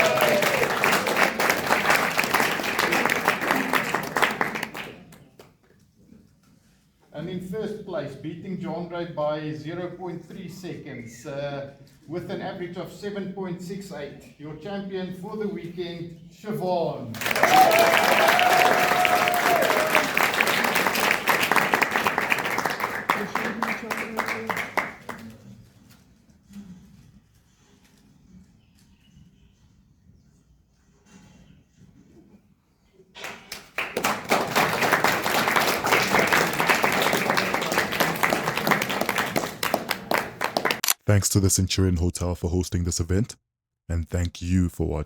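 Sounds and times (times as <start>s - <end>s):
audience applauding: 0.0s - 5.2s, 17.2s - 25.3s, 33.2s - 40.8s.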